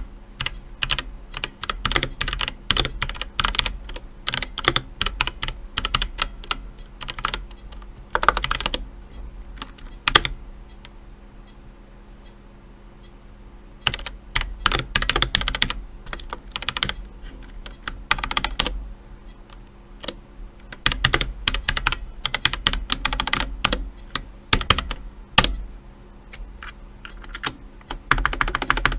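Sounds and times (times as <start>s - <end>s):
mechanical keyboard typing: 0.4s - 8.8s, 9.6s - 10.4s, 13.8s - 18.8s, 19.5s - 25.6s, 26.6s - 28.9s.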